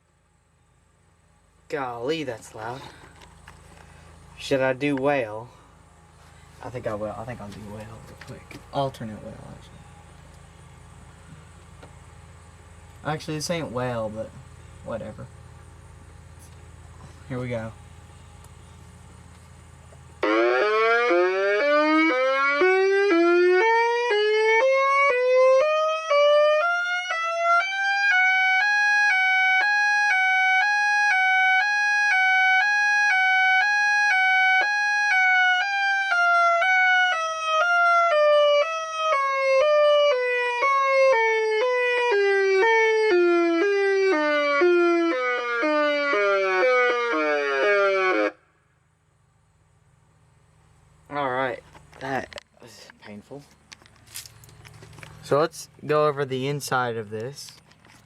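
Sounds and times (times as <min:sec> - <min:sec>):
electronic two-tone siren wail: 0:20.2 - 0:48.4.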